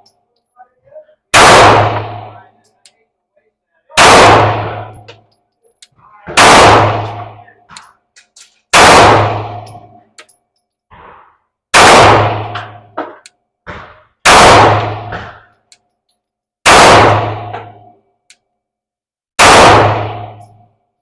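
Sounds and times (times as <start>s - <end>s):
pistol shots: 1.3s - 2.4s, 4.0s - 5.2s, 6.4s - 7.8s, 8.7s - 10.0s, 11.7s - 13.2s, 13.8s - 15.6s, 16.6s - 17.9s, 19.4s - 20.6s.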